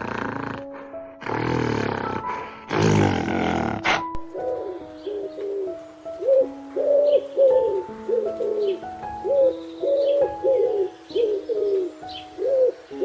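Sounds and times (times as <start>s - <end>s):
music with long held tones: 0.0s - 13.0s
bird calling in low notes: 4.3s - 13.0s.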